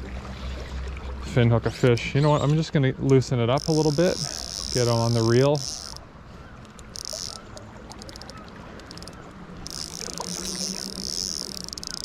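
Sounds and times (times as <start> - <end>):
rapid reel clicks: 3.6 - 6.0, 6.6 - 12.0
fishing reel drag buzzing: 3.6 - 12.0.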